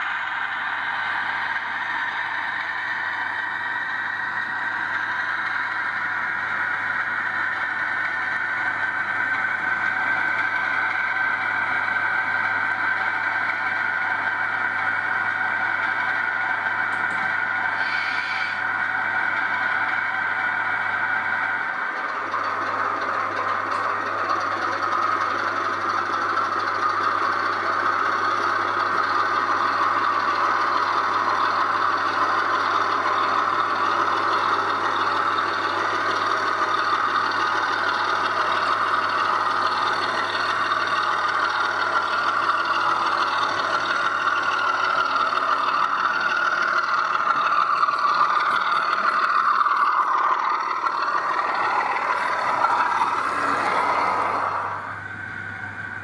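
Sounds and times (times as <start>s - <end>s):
diesel engine sound through small speaker: 0.0s - 56.0s
model train running noise: 0.0s - 56.0s
steady low hum: 34.8s - 56.0s.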